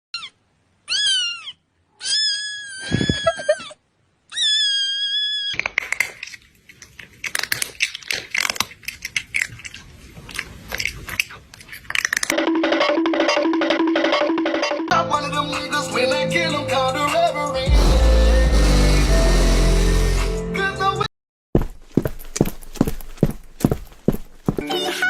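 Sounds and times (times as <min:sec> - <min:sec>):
cat meowing: 0:00.2 - 0:05.6.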